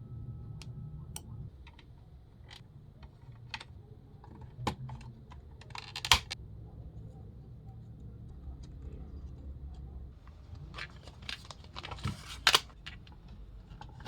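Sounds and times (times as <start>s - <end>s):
plastic toy parts clicking: 1.6s - 6.4s.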